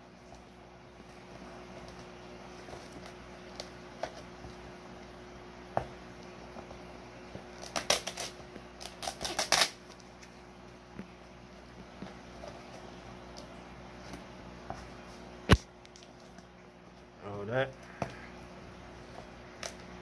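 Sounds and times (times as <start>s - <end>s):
packaging crackling and rustling: 7.5s - 10.4s.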